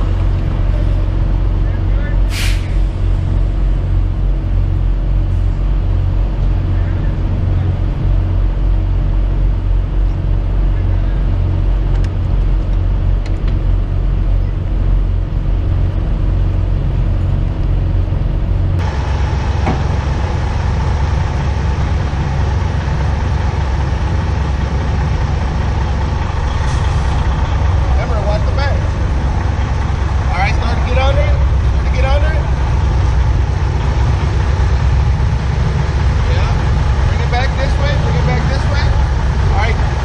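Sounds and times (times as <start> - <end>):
diesel truck engine running: 0.0 - 40.0
steady higher hum: 12.5 - 40.0.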